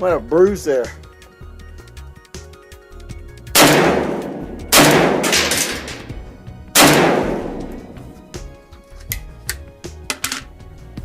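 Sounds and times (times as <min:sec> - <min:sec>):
background music: 0:00.0 - 0:11.0
rifle shots: 0:03.6 - 0:08.3.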